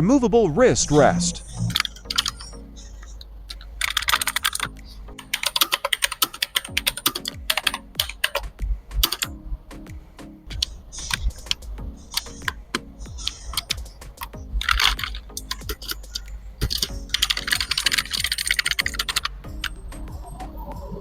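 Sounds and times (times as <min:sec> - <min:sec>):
mechanical keyboard key clicks: 0:03.5 - 0:09.3, 0:10.5 - 0:19.8.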